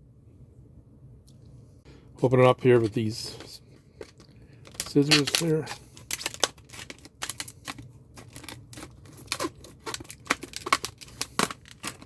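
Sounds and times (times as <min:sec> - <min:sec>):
plastic crinkling: 0:04.0 - 0:12.0.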